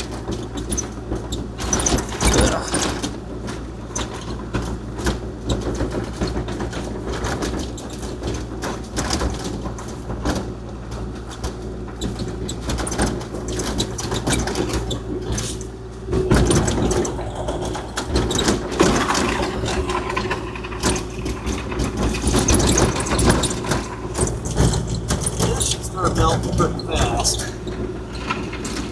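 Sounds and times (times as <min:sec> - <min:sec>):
clatter of knocks and scraping: 0:00.0 - 0:28.9
excavator diesel engine humming: 0:14.8 - 0:28.9.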